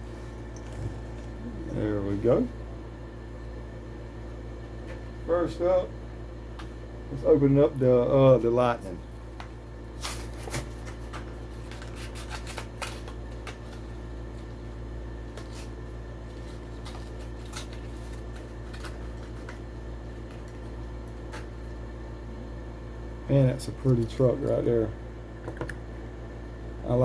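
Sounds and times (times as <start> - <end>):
steady low hum: 0.0 - 27.0
plastic packaging crinkling and tearing: 10.0 - 13.9, 16.3 - 19.6.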